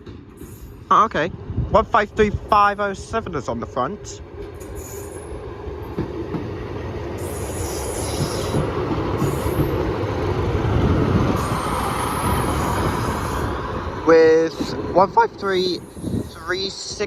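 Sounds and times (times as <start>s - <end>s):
diesel train engines: 0.0s - 17.0s
wheel squeals: 4.6s - 5.4s, 7.2s - 9.9s, 11.3s - 13.8s.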